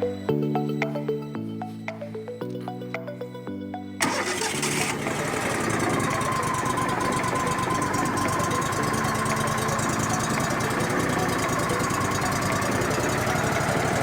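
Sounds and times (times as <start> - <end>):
faint steady whine: 3.1 - 14.0
sawmill engine running: 4.0 - 14.0.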